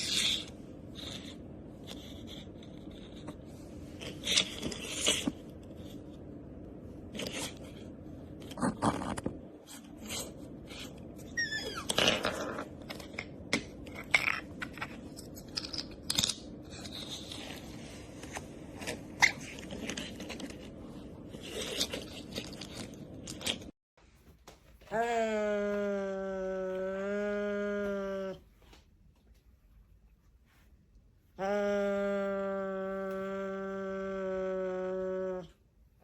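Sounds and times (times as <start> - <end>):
high-pitched squeak: 11.3 - 12.4.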